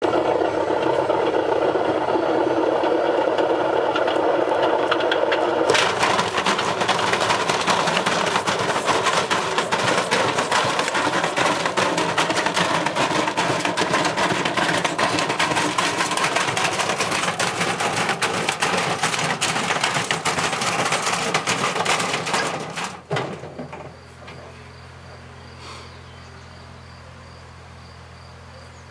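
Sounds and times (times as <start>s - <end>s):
rapid mechanical clattering: 0.0s - 24.0s.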